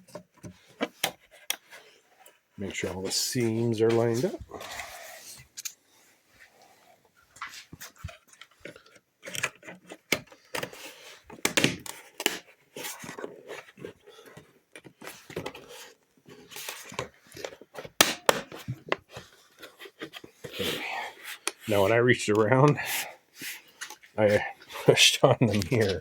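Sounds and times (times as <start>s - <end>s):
plastic parts clicking and rubbing: 7.3s - 26.0s.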